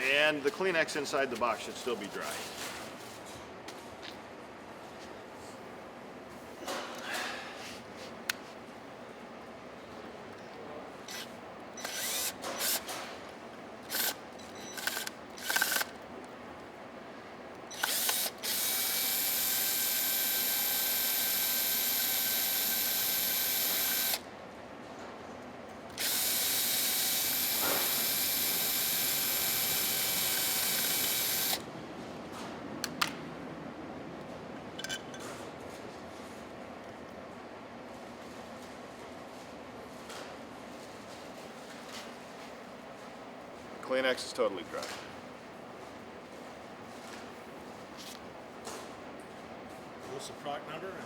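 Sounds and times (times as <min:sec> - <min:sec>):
power drill whining: 0:11.1 - 0:12.9, 0:13.9 - 0:16.0, 0:17.7 - 0:24.2, 0:25.9 - 0:31.6.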